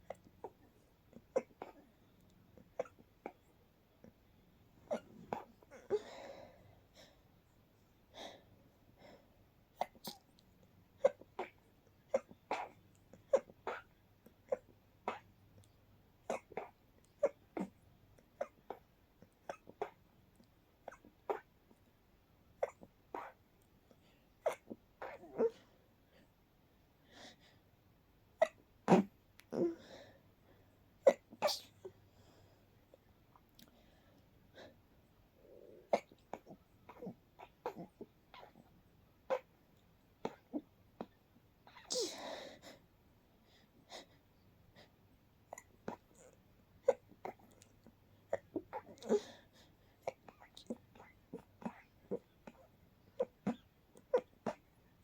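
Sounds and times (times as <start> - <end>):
muffled stifled sneezes: 9.8 - 10.3, 28.4 - 29.8, 31.0 - 32.0, 40.2 - 42.4
person stifling sneezes: 41.8 - 42.3.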